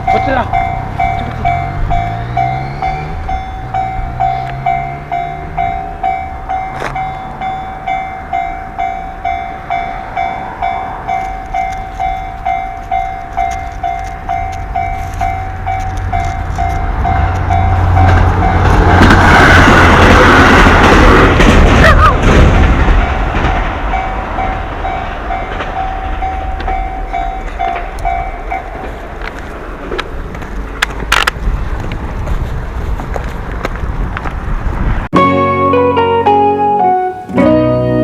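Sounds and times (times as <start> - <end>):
level-crossing warning bell: 0.0 - 18.8, 23.0 - 29.1
diesel train passing: 0.0 - 38.0.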